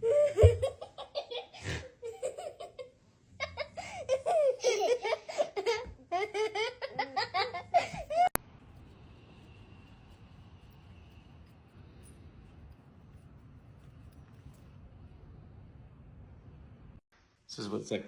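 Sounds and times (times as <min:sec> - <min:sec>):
person laughing hard: 0:00.0 - 0:02.8.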